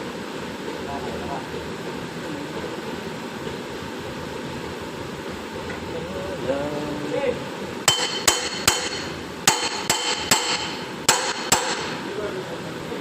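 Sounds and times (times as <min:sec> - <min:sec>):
hammer striking metal: 0:07.9 - 0:12.1.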